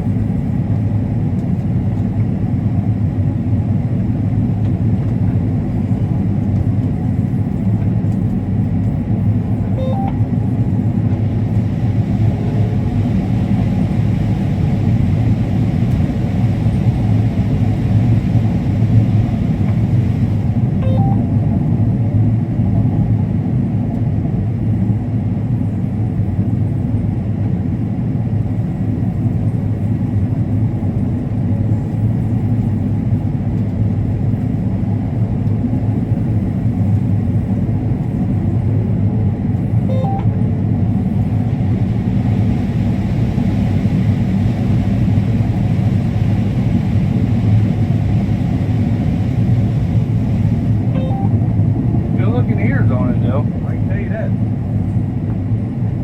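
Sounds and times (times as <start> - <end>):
combine harvester rumbling: 45.3 - 55.9
faint short tones: 51.0 - 51.4.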